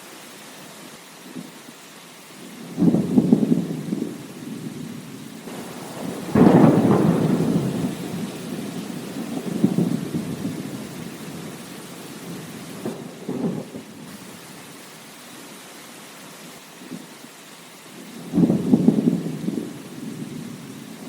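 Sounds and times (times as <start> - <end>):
steady rain: 0.0 - 21.0
thunder clap and rumble: 2.6 - 14.0, 18.1 - 21.0.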